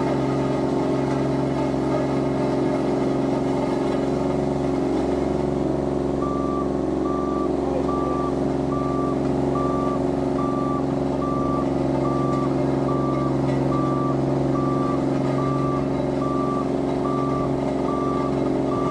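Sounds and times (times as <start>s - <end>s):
diesel engine running: 0.0s - 18.9s
back-up alarm beeping: 6.2s - 18.9s.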